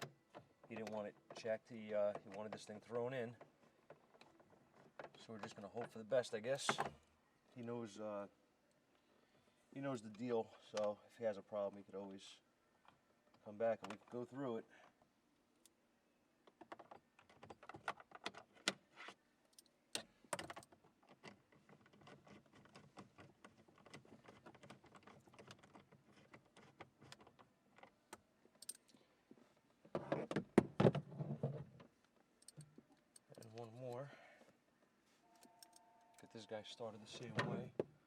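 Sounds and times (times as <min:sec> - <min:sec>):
clatter of plastic parts: 0:16.5 - 0:28.0.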